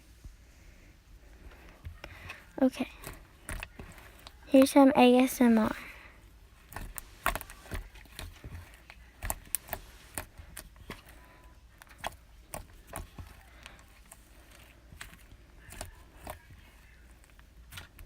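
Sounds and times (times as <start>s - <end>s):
slime clicking and popping: 6.7s - 11.1s.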